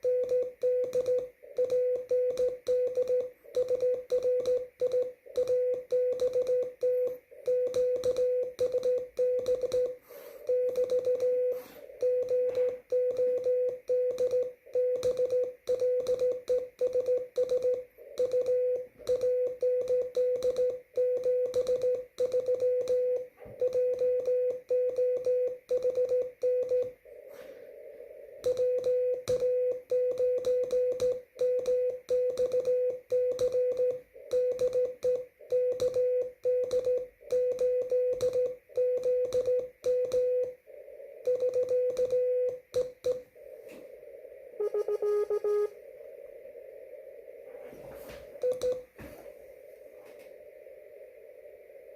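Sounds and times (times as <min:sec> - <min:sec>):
morse code tone: 0:00.0 - 0:27.2, 0:27.8 - 0:43.5, 0:44.5 - 0:45.8
faint receiver hiss: 0:45.6 - 0:51.9.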